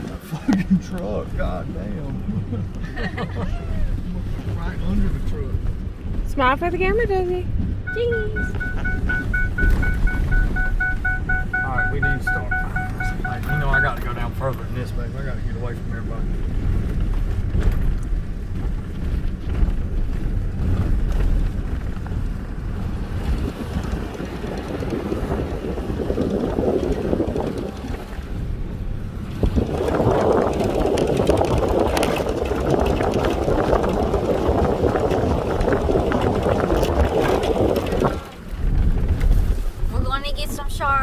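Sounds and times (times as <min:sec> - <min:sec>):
truck engine and tyre rumble: 0:00.0 - 0:41.0
wind on microphone: 0:16.3 - 0:41.0.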